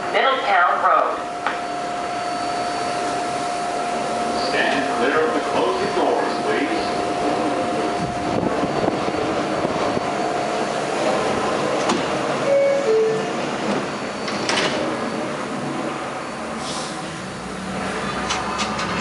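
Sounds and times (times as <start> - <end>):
stopped train hum: 0.0 - 19.0
train doors knocking shut: 11.8 - 14.9
two-tone door chime: 12.4 - 13.4.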